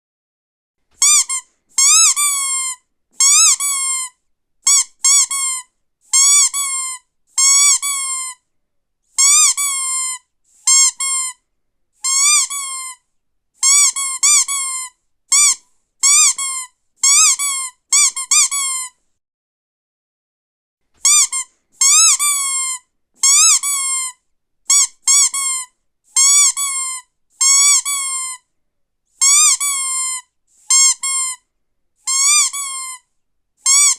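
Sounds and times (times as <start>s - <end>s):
squeaky dog toy squeaking: 1.0s - 8.4s, 9.2s - 11.4s, 12.0s - 13.0s, 13.6s - 19.0s, 21.0s - 28.4s, 29.2s - 31.4s, 32.0s - 33.9s.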